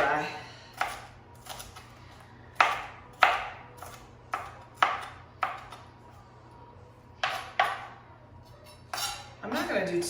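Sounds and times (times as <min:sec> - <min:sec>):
knife chopping on cutting board: 0:00.0 - 0:02.0, 0:02.6 - 0:05.8, 0:07.2 - 0:07.9.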